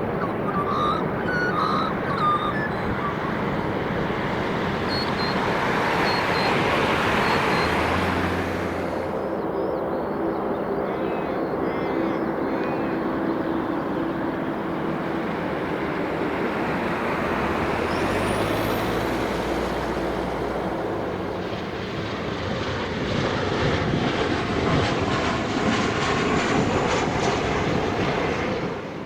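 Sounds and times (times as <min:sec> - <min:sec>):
jet engines roaring: 0:00.0 - 0:29.0
faint rising whistle: 0:00.2 - 0:03.5, 0:04.7 - 0:10.2.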